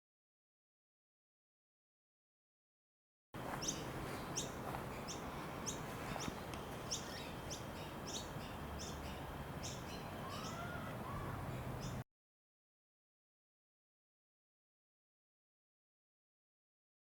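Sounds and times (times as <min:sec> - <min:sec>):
small bird chirping: 0:03.5 - 0:12.0.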